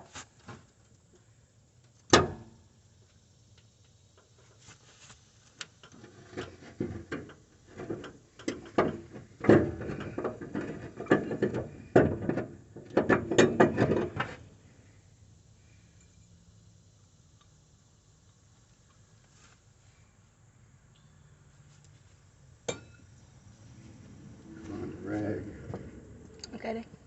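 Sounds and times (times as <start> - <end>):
metal tool clank: 22.7 - 23.0.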